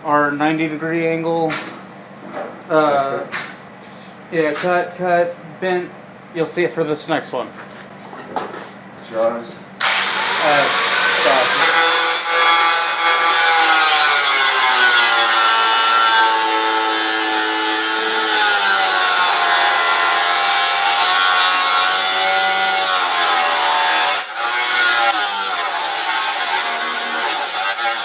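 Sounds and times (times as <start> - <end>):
power tool cutting metal: 9.8 - 28.0.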